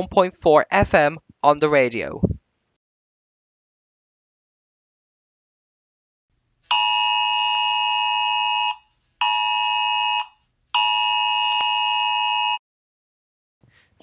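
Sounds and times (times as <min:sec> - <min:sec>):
electronic alarm dual tone: 0:06.7 - 0:12.6.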